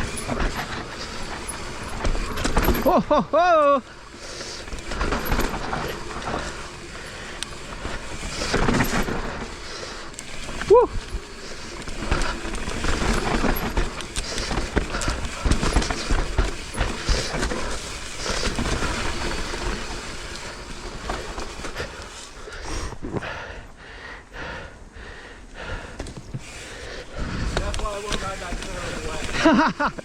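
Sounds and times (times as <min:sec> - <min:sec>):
tyres rumbling on dirt: 0:00.0 - 0:23.2, 0:26.2 - 0:30.0
bike rattling over bumps: 0:00.0 - 0:23.6, 0:25.6 - 0:30.0.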